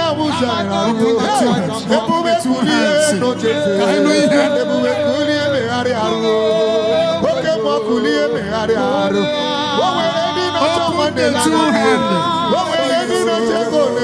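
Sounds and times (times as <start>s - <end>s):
musical accompaniment: 0.0s - 14.0s
person singing with vibrato: 0.0s - 14.0s.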